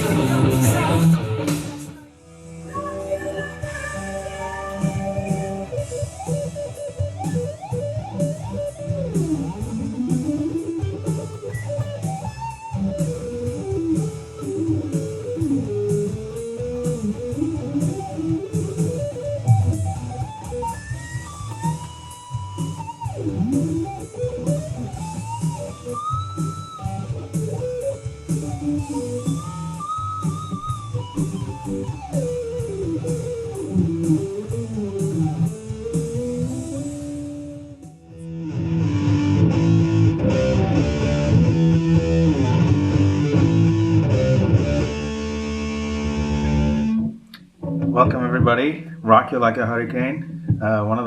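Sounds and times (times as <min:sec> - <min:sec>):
electric guitar lead: 0:00.0 - 0:50.7
rhythm guitar: 0:00.0 - 0:51.0
drum beat: 0:03.6 - 0:36.8.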